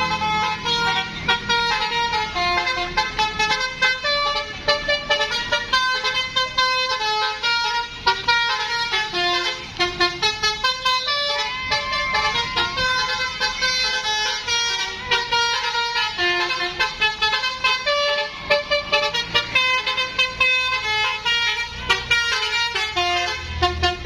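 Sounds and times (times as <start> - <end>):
multi-trumpet electric horn tune: 0.0 - 24.0.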